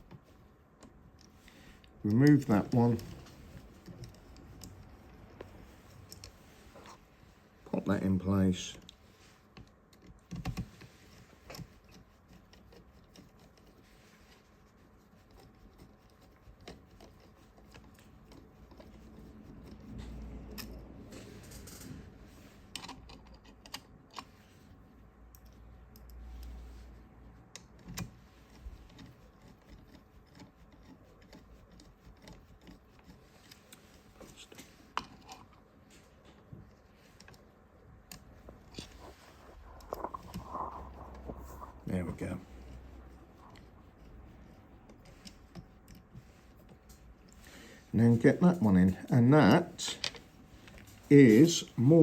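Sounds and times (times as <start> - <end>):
small clicks and taps of parts: 0.0 - 6.4, 8.7 - 13.7, 22.7 - 24.4, 25.3 - 26.6, 27.5 - 38.9.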